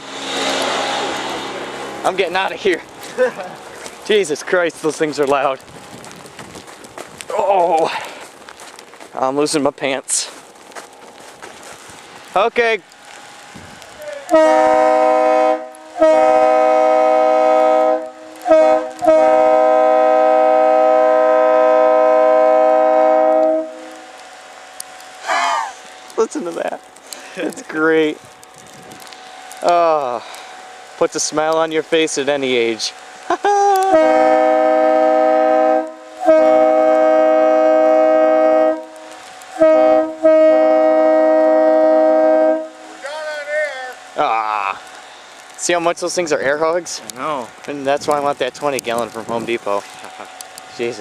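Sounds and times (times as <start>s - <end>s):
locomotive air horn blasts: 14.2s - 24.1s, 33.9s - 43.0s.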